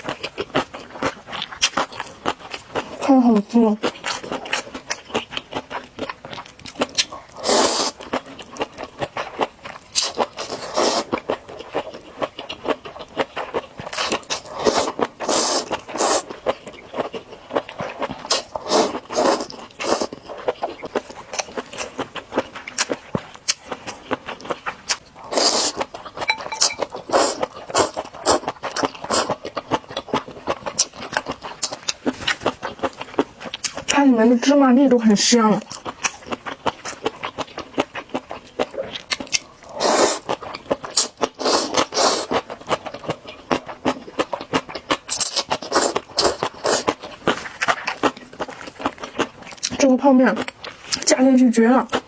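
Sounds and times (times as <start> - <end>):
chewing with wet mouth clicks: 0.0 - 3.0, 3.8 - 34.0, 35.6 - 51.1
slurping noodles: 7.4 - 8.0, 10.0 - 11.2, 14.0 - 16.4, 18.0 - 20.6, 25.2 - 26.0, 27.0 - 29.4, 39.6 - 42.5, 45.2 - 49.3.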